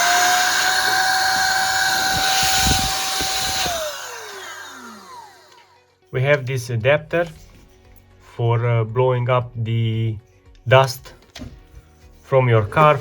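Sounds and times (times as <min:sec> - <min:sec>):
electric air pump whining: 0:00.0 - 0:06.4
air gusts buffeting microphone: 0:01.6 - 0:03.9.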